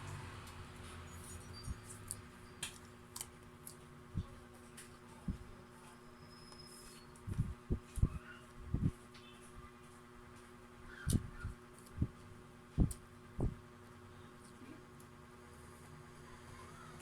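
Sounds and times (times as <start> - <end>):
faint steady hum: 0.0 - 17.0
soft low thumps: 7.3 - 9.0, 12.0 - 13.6.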